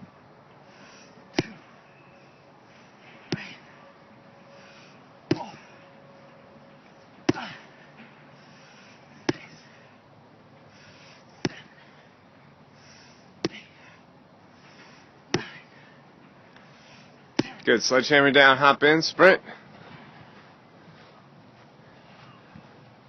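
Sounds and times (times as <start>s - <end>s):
sledgehammer thudding on rubber: 1.3s - 1.7s, 3.2s - 3.6s, 5.2s - 5.7s, 7.2s - 7.7s, 9.2s - 9.7s, 11.4s - 11.8s, 13.4s - 13.8s, 15.3s - 15.6s, 17.4s - 17.7s.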